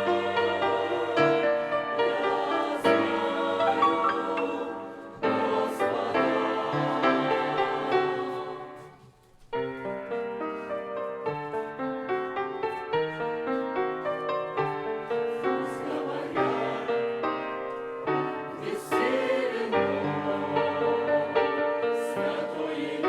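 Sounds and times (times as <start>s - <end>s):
church choir singing a hymn: 0.0s - 9.0s, 14.6s - 23.0s.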